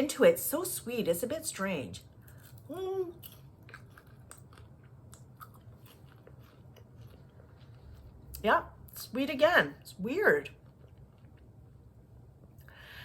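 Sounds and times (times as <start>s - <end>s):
popcorn crunching: 2.2s - 8.4s, 10.4s - 11.6s.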